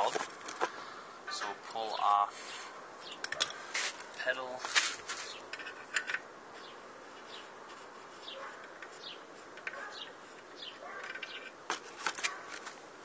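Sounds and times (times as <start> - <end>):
bird chirping: 1.2 - 3.6, 6.6 - 7.6, 8.2 - 11.5.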